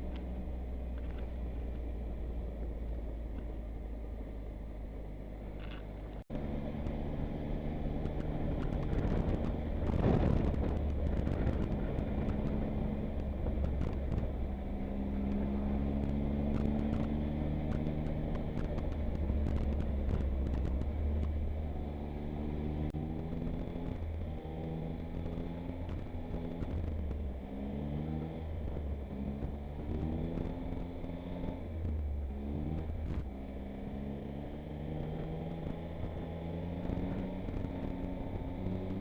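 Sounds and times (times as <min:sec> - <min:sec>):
motorcycle engine accelerating: 0:00.0 - 0:39.0
wind noise: 0:07.9 - 0:21.5.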